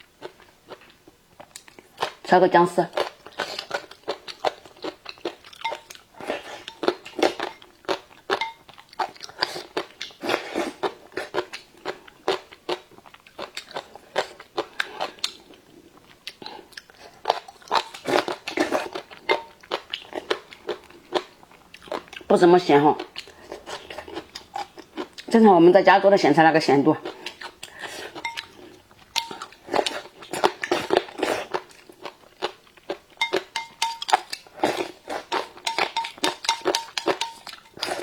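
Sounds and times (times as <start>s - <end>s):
crunchy chewing: 3.0s - 22.3s, 27.0s - 38.0s.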